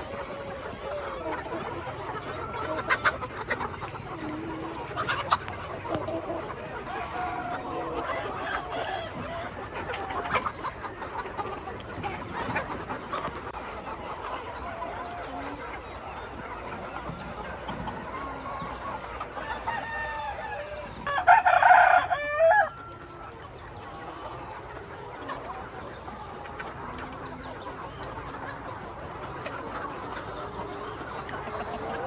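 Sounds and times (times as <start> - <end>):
chickens clucking: 0.0 - 32.0
rooster crowing loudly: 21.0 - 22.8.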